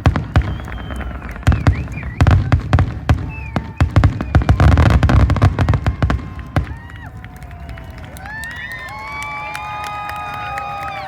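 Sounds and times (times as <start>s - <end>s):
heavy firework booms: 0.0s - 8.0s
fireworks bursting: 0.0s - 9.4s.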